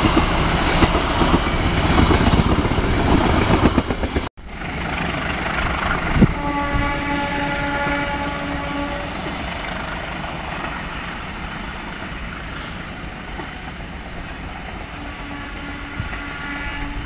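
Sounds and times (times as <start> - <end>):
train wheels rushing: 0.0 - 17.0
faint train horn: 6.2 - 9.5, 14.8 - 17.0.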